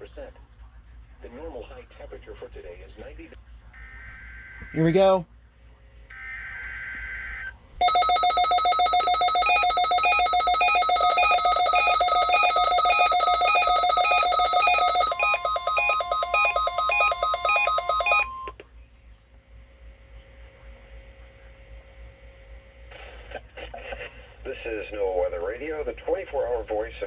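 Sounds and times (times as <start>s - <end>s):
steady warning tone: 6.2s - 18.5s
warbling beeping alarm: 6.4s - 18.5s.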